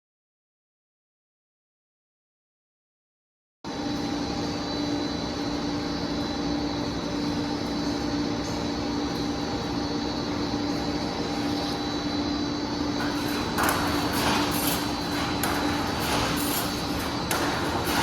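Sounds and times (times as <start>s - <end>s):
electrical hum: 3.7s - 18.0s
welding machine hissing strokes: 12.9s - 18.0s.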